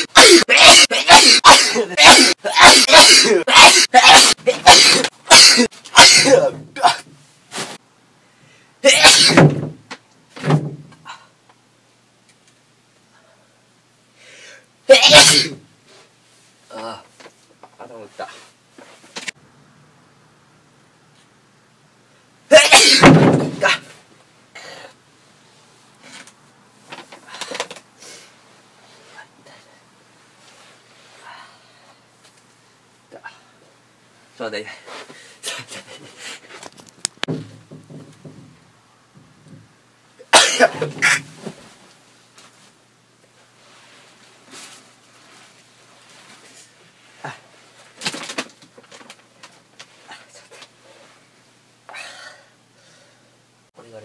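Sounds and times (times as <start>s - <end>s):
loud human sneezes: 0.0s - 7.8s, 8.8s - 9.5s, 14.9s - 15.6s, 22.5s - 24.0s, 40.2s - 41.6s.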